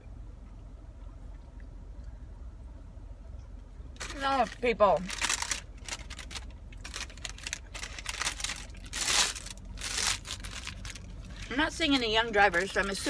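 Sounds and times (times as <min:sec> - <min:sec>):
steady low hum: 0:00.0 - 0:13.0
food wrapper crinkling: 0:04.0 - 0:13.0.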